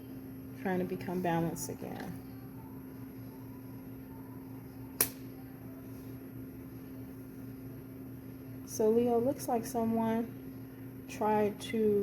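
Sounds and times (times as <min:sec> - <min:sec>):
low electrical room hum: 0:00.0 - 0:12.0
sharp click: 0:05.0 - 0:05.2.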